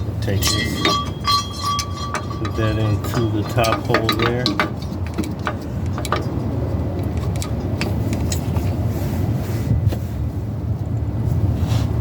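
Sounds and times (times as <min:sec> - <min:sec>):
light metal clicks and taps: 0:00.0 - 0:06.4
steady low rumble: 0:00.0 - 0:11.6.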